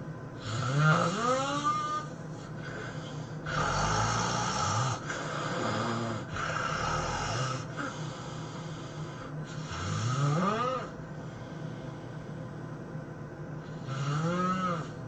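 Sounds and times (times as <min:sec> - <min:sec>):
person snoring heavily: 0:00.4 - 0:11.0, 0:13.7 - 0:15.0.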